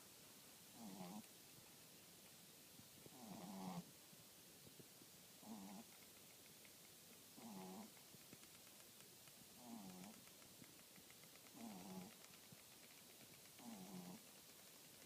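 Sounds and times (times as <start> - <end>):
dog snoring quietly: 0.7 - 1.3, 3.1 - 3.9, 5.4 - 6.0, 7.4 - 8.0, 9.6 - 10.2, 11.5 - 12.3, 13.5 - 14.4.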